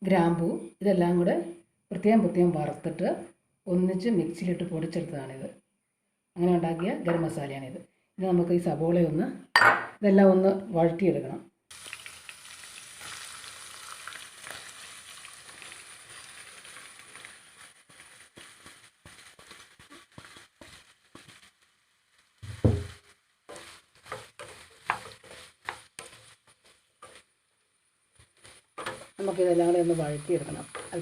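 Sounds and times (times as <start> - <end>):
onions sizzling in a frying pan: 11.7 - 31.0
spoon stirring and scraping pan: 14.4 - 31.0
loud thump: 22.4 - 23.0.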